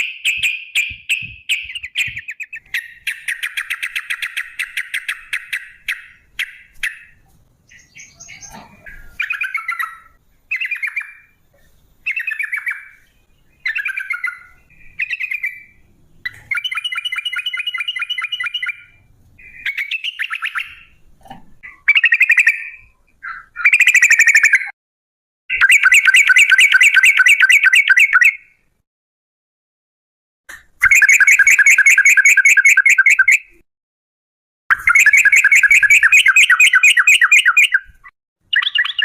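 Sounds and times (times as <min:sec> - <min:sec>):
bird singing short phrases: 0:38.5 - 0:39.0.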